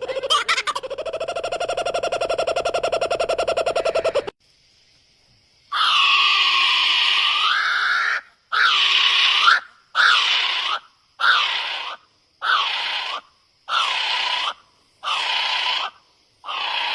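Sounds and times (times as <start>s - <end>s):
bird screeching: 5.7s - 15.9s, 16.5s - 16.9s.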